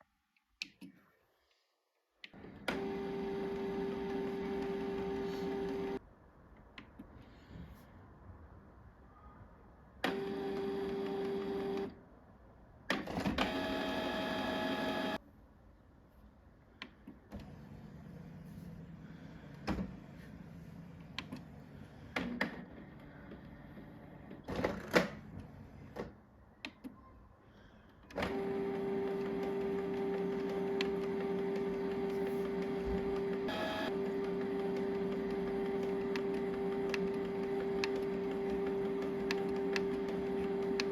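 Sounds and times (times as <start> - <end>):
printer motors running: 2.4 - 6.0, 10.0 - 11.9, 13.2 - 15.2, 28.2 - 40.9.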